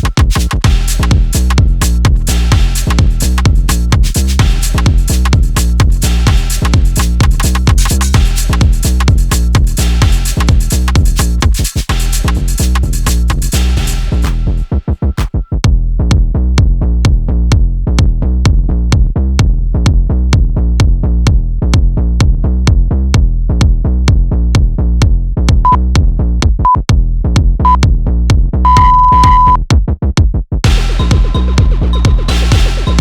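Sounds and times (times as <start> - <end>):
electronic dance music: 0.0 - 15.3, 28.7 - 29.6, 30.6 - 33.0
interval timer beeps: 28.7 - 29.6.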